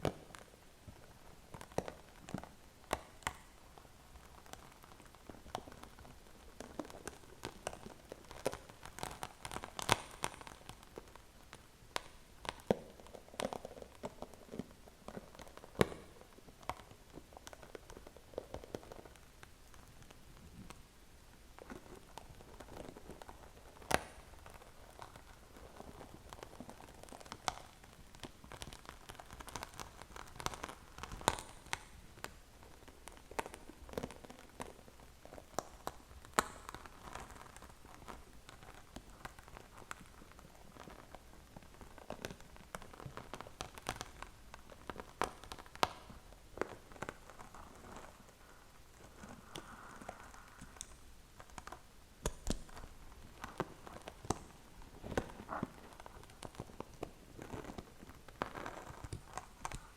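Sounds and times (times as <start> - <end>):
soft steady rustle: 0.0 - 59.9
waffle crackling: 21.5 - 59.9.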